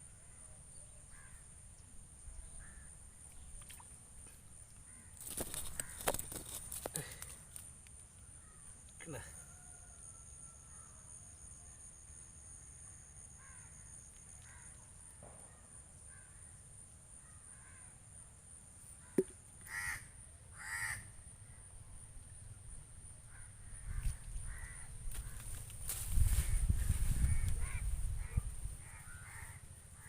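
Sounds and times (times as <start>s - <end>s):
crow cawing: 19.7s - 21.1s, 23.3s - 25.4s, 27.2s - 30.0s.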